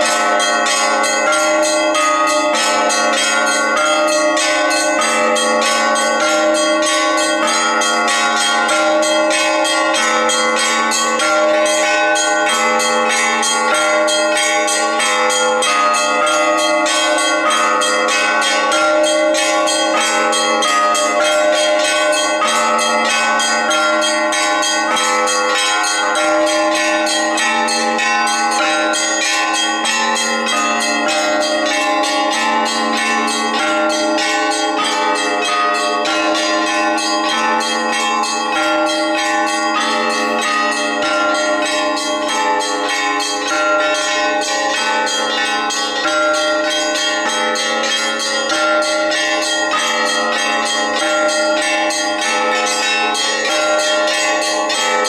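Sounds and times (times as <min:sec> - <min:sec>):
church bells ringing a peal: 0:00.0 - 0:55.0.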